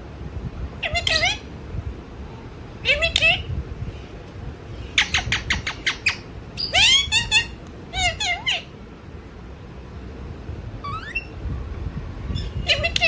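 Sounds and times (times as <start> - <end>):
parrot chattering: 4.9 - 8.7, 10.8 - 11.4, 12.6 - 13.0.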